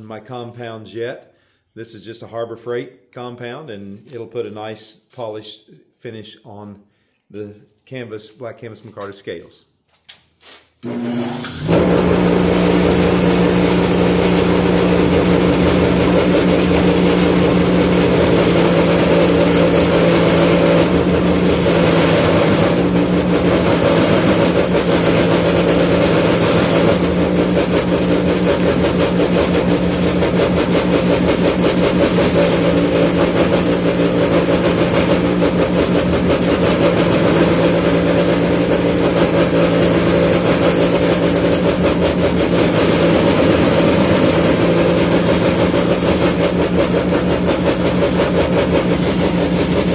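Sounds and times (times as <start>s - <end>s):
bench buffer motor humming: 10.8s - 49.9s.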